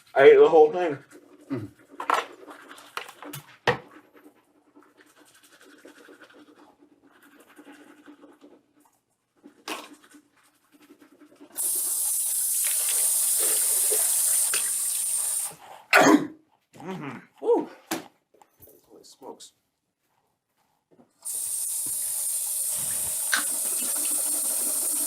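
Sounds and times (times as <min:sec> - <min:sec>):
running water hiss: 0:11.6 - 0:15.6, 0:21.2 - 0:25.0.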